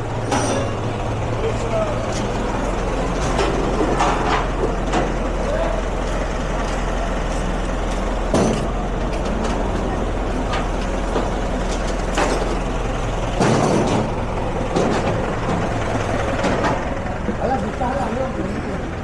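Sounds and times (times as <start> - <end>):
road traffic: 0.0 - 19.0.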